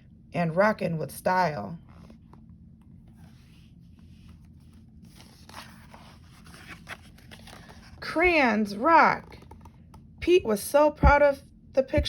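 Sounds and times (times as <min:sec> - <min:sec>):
paper book rustling: 0:01.8 - 0:08.2, 0:09.2 - 0:10.0.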